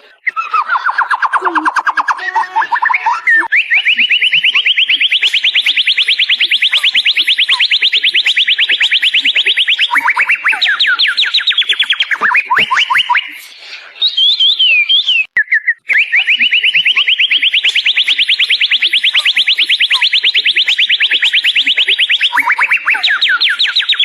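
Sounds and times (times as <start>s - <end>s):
bird descending whistles: 0.1s - 13.4s, 14.0s - 24.0s
songbird fast trill: 15.9s - 24.0s.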